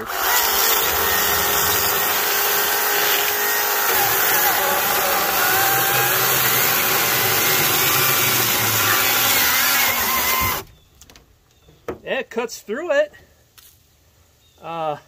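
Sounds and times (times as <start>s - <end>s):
electric chainsaw cutting log: 0.0s - 10.7s.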